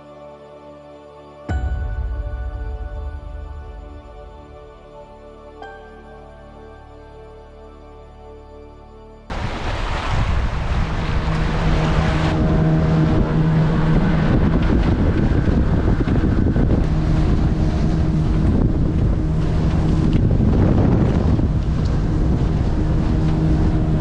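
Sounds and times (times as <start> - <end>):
motorboat engine humming: 1.5 - 24.0
wind buffeting microphone: 9.3 - 24.0.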